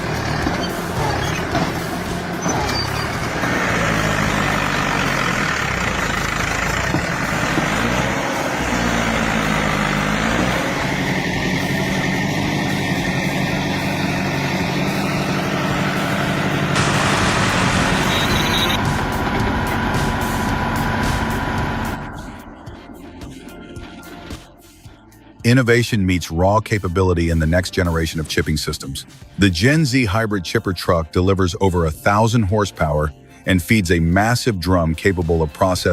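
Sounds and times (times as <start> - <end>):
heavy machinery engine under load: 0.0 - 22.3.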